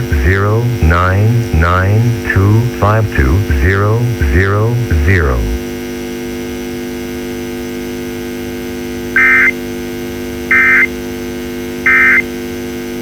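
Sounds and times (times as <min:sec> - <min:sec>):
steady electrical hum: 0:00.0 - 0:13.0
warbling data tone bursts: 0:09.2 - 0:09.6, 0:10.5 - 0:10.9, 0:11.9 - 0:12.2.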